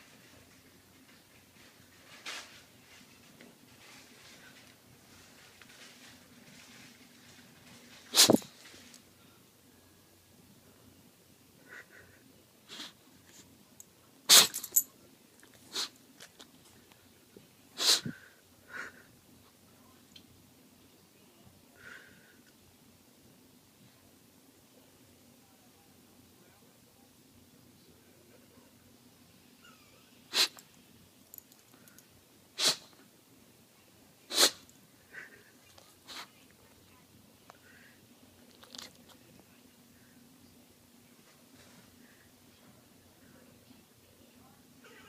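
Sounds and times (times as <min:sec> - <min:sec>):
dog sneezing: 0:08.1 - 0:08.5, 0:12.7 - 0:13.0, 0:14.3 - 0:14.7, 0:15.7 - 0:16.0, 0:17.8 - 0:18.1, 0:30.3 - 0:30.6, 0:32.6 - 0:33.0, 0:34.3 - 0:34.7, 0:36.1 - 0:36.3.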